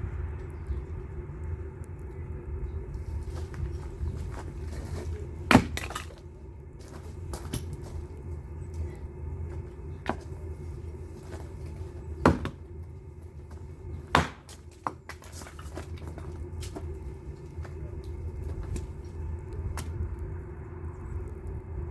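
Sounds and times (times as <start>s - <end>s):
steady low hum: 0.0s - 21.9s
firewood cracking when split: 4.2s - 8.0s, 11.2s - 12.7s, 14.0s - 17.7s.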